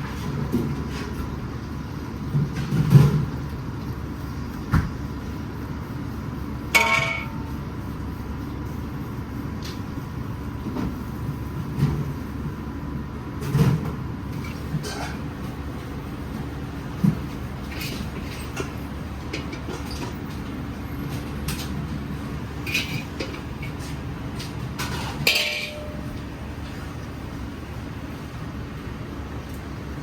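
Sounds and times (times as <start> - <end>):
kitchen low rumble: 0.0 - 30.0
ringing metal clang: 6.8 - 7.4, 25.3 - 26.1.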